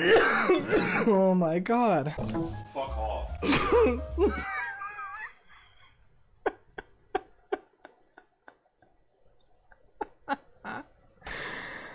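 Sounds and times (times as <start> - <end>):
man laughing uncontrollably: 3.4 - 5.4.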